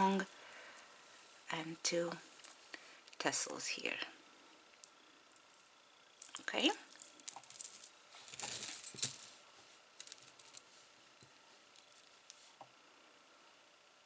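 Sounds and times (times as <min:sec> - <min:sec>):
metal jewelry jingling: 0:05.4 - 0:09.4, 0:10.0 - 0:10.7.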